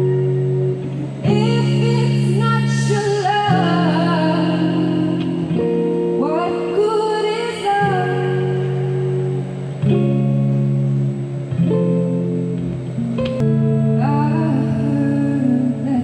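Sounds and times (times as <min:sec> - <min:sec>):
sustained guitar chords: 0:00.0 - 0:16.0
woman singing: 0:01.2 - 0:09.1, 0:13.9 - 0:16.0.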